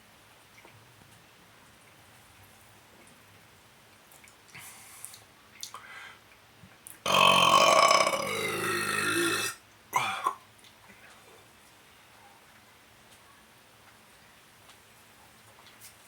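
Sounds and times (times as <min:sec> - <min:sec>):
long loud burp: 0:07.1 - 0:10.4.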